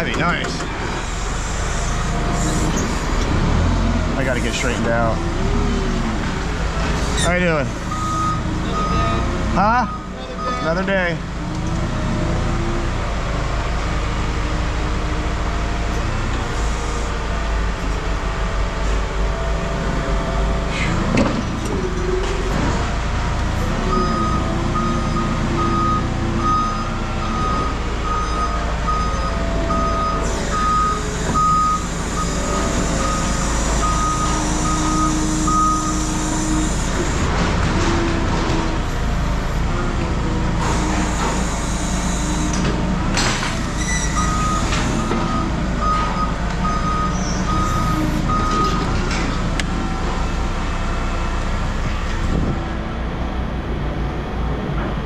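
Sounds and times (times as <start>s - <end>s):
engine running: 0.0s - 55.0s
vehicle reversing alarm beeping: 6.8s - 11.1s, 23.2s - 37.3s, 40.4s - 50.0s.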